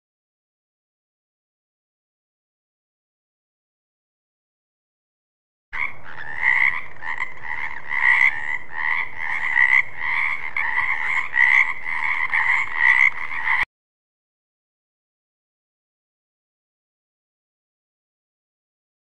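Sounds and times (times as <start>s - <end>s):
frogs croaking: 5.8s - 13.7s.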